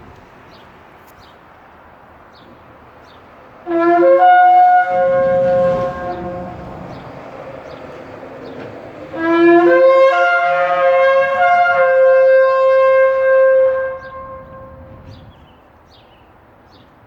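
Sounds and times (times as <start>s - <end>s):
shofar blast: 3.7s - 6.9s, 9.1s - 15.2s.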